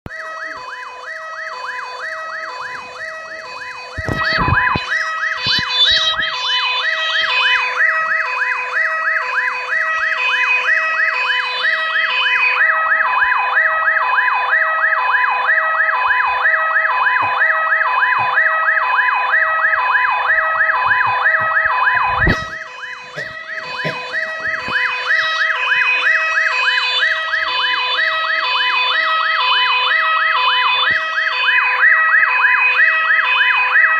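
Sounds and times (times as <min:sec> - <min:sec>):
emergency vehicle siren wailing: 0:00.1 - 0:33.9
heavy thumps: 0:20.4 - 0:26.1.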